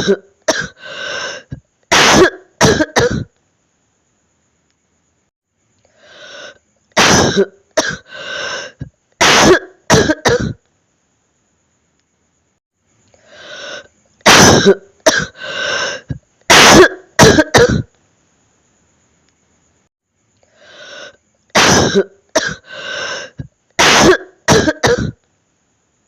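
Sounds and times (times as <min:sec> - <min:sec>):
person coughing wetly: 0:00.0 - 0:00.8, 0:01.9 - 0:03.3, 0:07.0 - 0:08.1, 0:09.2 - 0:10.6, 0:14.2 - 0:15.4, 0:16.5 - 0:17.9, 0:21.6 - 0:22.6, 0:23.8 - 0:25.2
person breathing in: 0:00.8 - 0:01.6, 0:05.8 - 0:06.6, 0:08.0 - 0:08.9, 0:13.1 - 0:13.9, 0:15.4 - 0:16.2, 0:20.4 - 0:21.2, 0:22.6 - 0:23.5.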